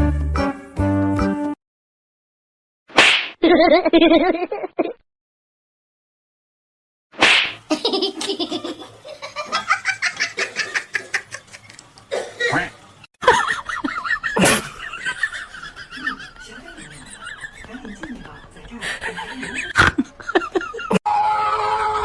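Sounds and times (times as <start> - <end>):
person laughing hard: 13.2 - 18.2, 18.8 - 21.0.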